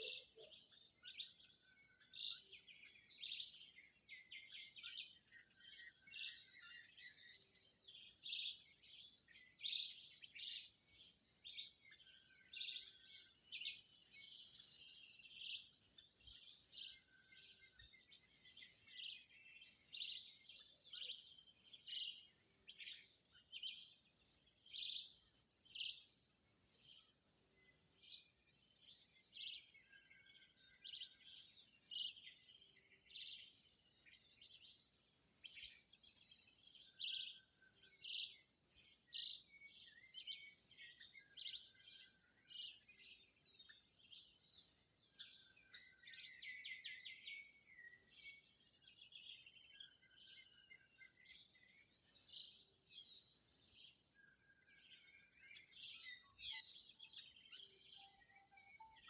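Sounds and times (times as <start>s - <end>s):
insect trill: 20.6s - 59.0s.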